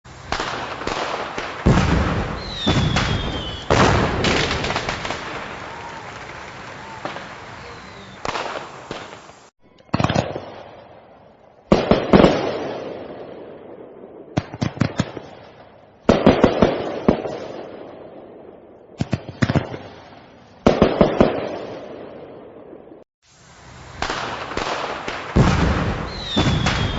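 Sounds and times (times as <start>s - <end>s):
fireworks rumble: 0.0s - 26.9s
fireworks bangs and crackles: 0.1s - 26.9s.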